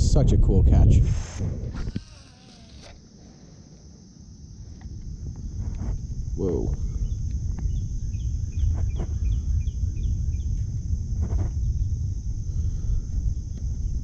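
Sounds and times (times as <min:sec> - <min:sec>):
wind rumbling on microphone: 0:00.0 - 0:03.2, 0:04.2 - 0:14.0
bird chirping: 0:06.8 - 0:10.6.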